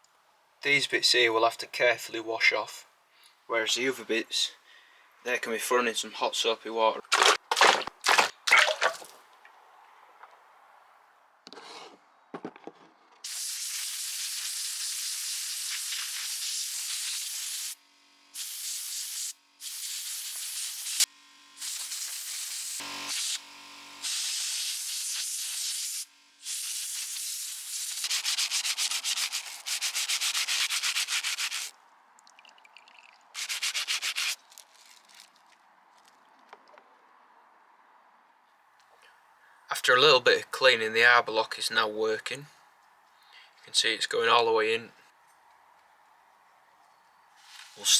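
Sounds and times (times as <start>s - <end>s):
scrubbing metal parts: 7.0s - 9.2s.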